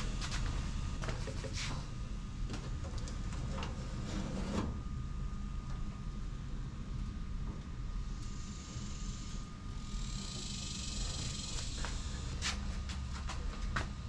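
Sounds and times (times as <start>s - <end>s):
steady low hum: 0.0s - 14.0s
barbecue scraping and creaking: 3.2s - 4.8s.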